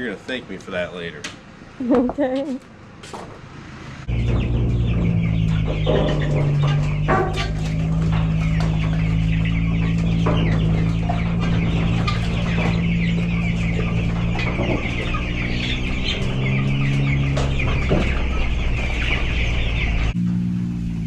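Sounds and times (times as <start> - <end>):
chicks peeping: 4.1 - 20.2.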